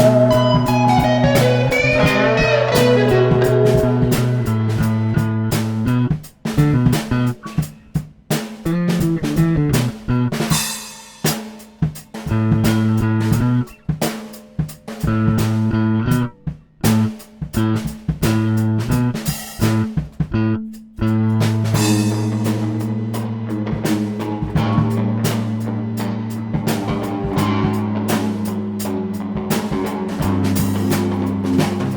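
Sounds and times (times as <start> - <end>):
electric guitar: 0.0 - 7.9, 15.0 - 31.9
bass guitar: 0.0 - 14.3, 14.9 - 31.9
drum kit: 0.0 - 31.9.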